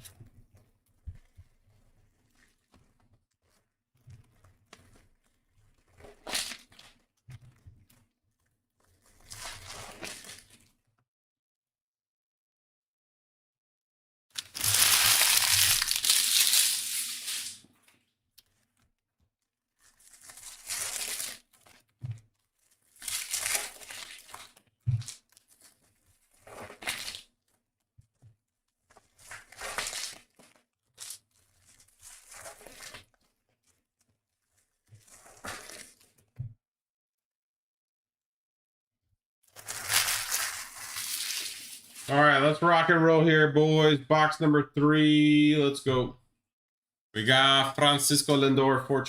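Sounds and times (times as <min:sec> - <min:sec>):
packaging tearing and crinkling: 0:14.4 - 0:17.6, 0:19.8 - 0:21.8, 0:22.7 - 0:25.8, 0:26.4 - 0:27.3, 0:29.2 - 0:33.2, 0:39.5 - 0:42.1.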